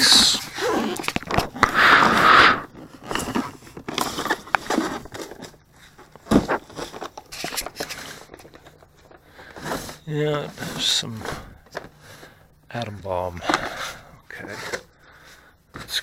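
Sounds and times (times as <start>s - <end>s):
cardboard packaging rustling: 0.0s - 12.4s.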